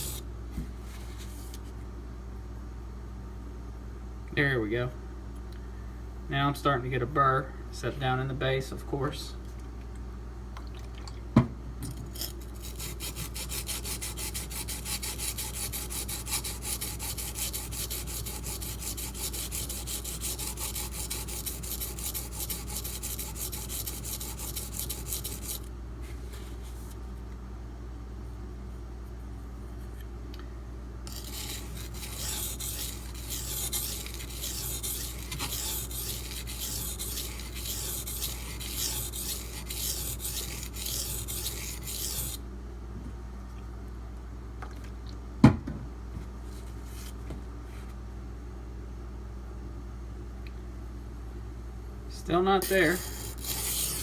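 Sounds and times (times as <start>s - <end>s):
knife scraping on whetstone: 0.0s - 0.2s, 12.1s - 25.7s, 31.1s - 42.4s, 52.6s - 54.0s.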